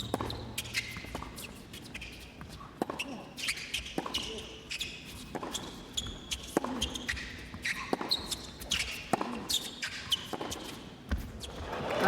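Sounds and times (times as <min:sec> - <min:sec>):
rackets striking tennis ball: 0:00.0 - 0:01.6
shoes squeaking on court: 0:00.0 - 0:11.8.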